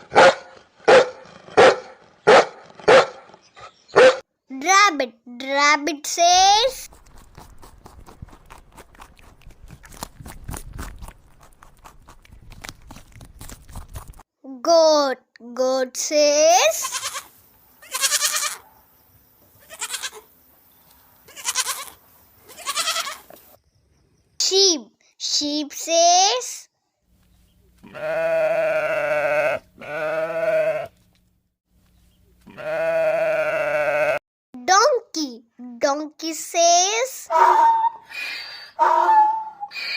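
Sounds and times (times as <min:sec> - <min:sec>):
rabbit munching: 0:06.6 - 0:14.2
sheep bleating: 0:16.8 - 0:18.6, 0:19.6 - 0:20.2, 0:21.3 - 0:23.2, 0:27.8 - 0:31.0, 0:32.4 - 0:34.2.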